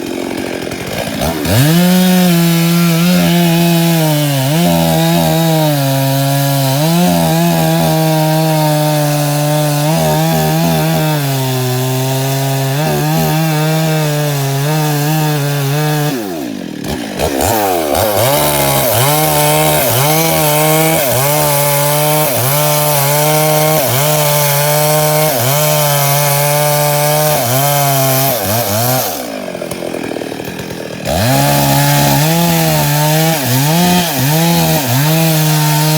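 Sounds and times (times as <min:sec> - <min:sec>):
chainsaw cutting wood: 0:00.0 - 0:35.9.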